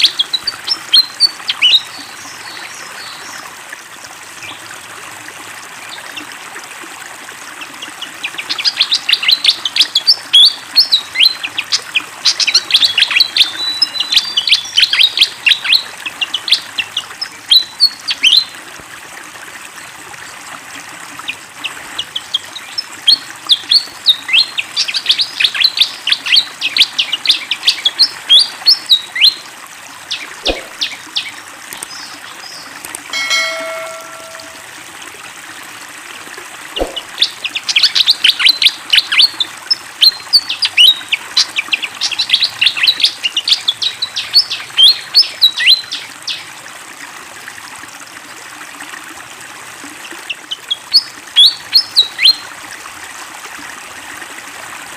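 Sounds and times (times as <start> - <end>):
bird twittering song: 0.0 - 3.4, 7.9 - 18.5, 22.0 - 29.4, 30.1 - 34.6, 36.8 - 46.4, 50.3 - 52.4
flowing water rushing: 0.0 - 54.9
brief low tone: 33.2 - 34.7.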